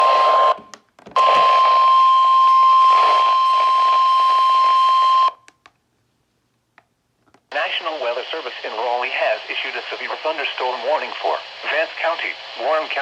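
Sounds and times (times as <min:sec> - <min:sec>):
weather radio alarm tone: 0:00.0 - 0:05.4
radio static hiss: 0:01.2 - 0:05.3, 0:07.5 - 0:13.0.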